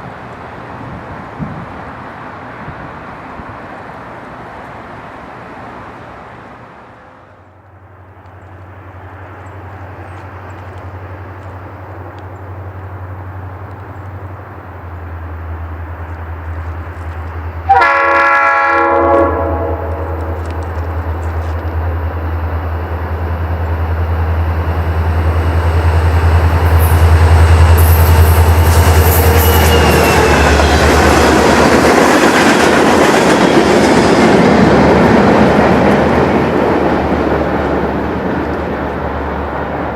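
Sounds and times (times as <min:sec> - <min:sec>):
wheels on rail: 0:00.0 - 0:39.9
locomotive engine drone: 0:07.1 - 0:39.9
locomotive horn toot: 0:17.6 - 0:20.6, 0:27.7 - 0:30.8
wheels squealing: 0:26.0 - 0:31.4.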